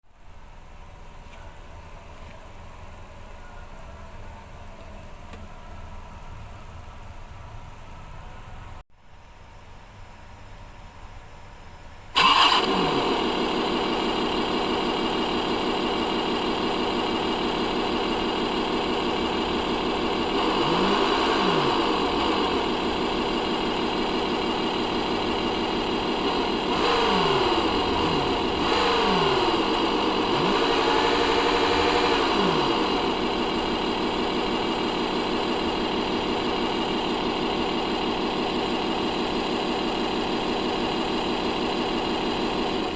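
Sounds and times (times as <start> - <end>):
simulated engine from small speaker: 12.2 - 42.9.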